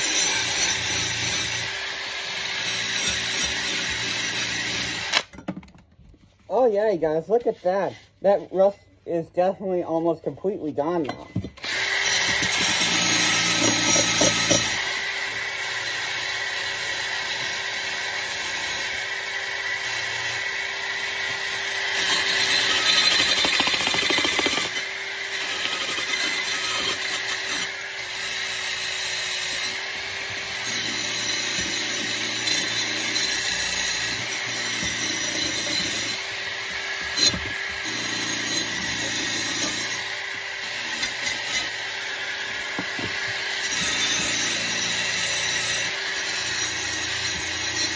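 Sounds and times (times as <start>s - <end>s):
electric drill motor whine: 4.0s - 5.3s, 11.6s - 18.0s, 18.8s - 47.9s.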